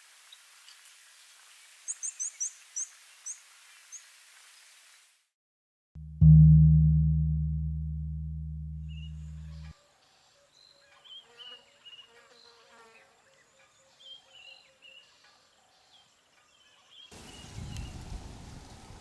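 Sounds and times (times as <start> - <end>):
low ringing tone: 6.0 - 9.7.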